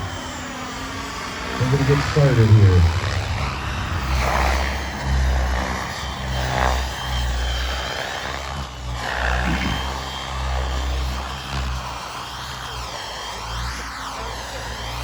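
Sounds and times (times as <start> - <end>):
model helicopter turbine whine: 0.0 - 15.0
low rumble: 1.6 - 5.6.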